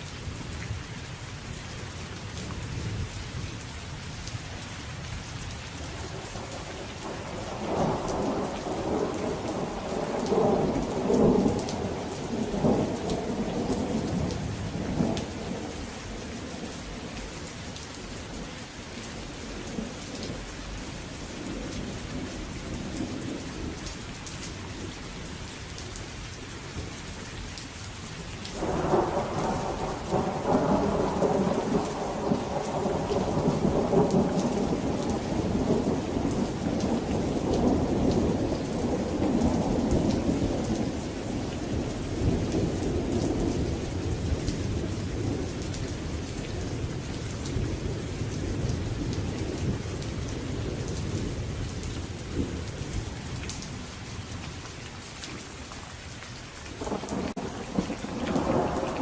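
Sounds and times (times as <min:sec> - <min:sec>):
steady rain: 0:00.0 - 0:59.0
thunder rumbling: 0:06.0 - 0:17.0, 0:28.6 - 0:53.7, 0:56.8 - 0:59.0.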